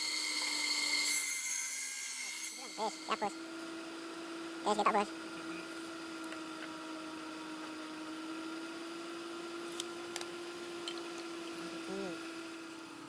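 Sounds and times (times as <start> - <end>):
steady machine hum: 2.2 - 10.8.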